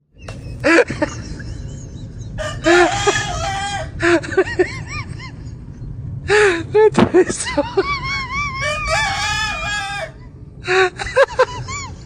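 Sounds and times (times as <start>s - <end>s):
rooster crowing: 2.4s - 4.0s, 8.5s - 10.2s.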